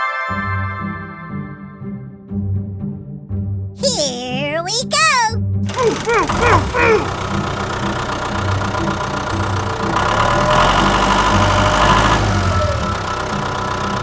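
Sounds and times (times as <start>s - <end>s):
construction vehicle engine running: 5.7s - 14.0s.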